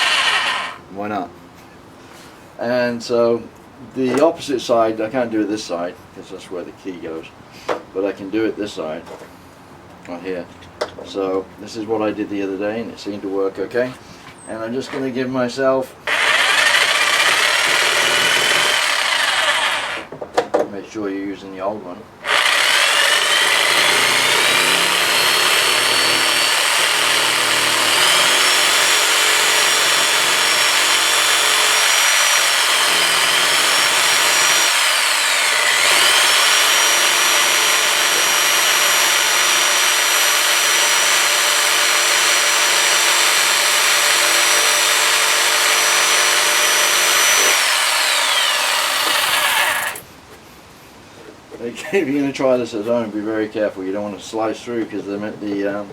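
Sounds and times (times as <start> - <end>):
electric jigsaw cutting plastic: 0.0 - 0.8, 16.1 - 20.1, 22.2 - 50.0.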